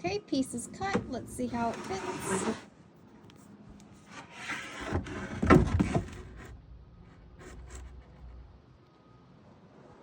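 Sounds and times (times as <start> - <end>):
wood rubbing and scraping: 1.6 - 2.7, 4.0 - 8.5.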